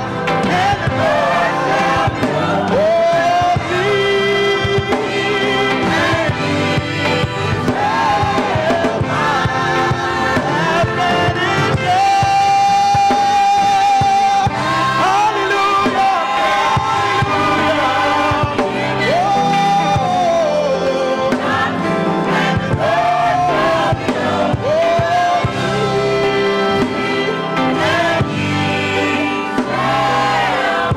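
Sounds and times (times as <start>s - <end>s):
gospel choir singing: 0.0s - 30.9s
instrumental backing: 0.0s - 30.9s.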